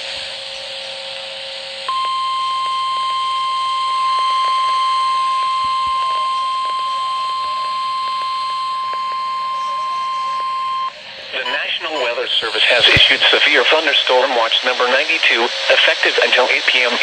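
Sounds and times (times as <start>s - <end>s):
radio hiss and crackle: 0.0s - 17.0s
brief lower tone: 1.9s - 12.2s
steady high alarm beep: 1.9s - 13.4s.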